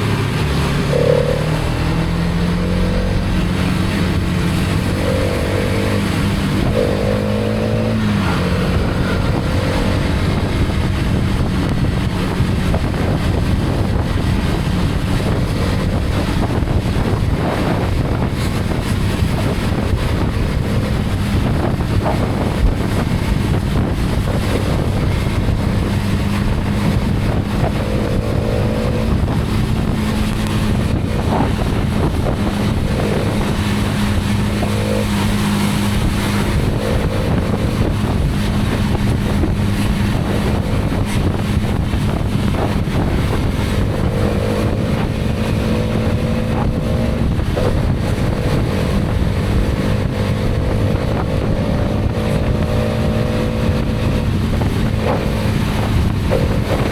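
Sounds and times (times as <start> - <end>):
motorcycle engine cruising: 0.0 - 56.9
wind on microphone: 0.0 - 56.9.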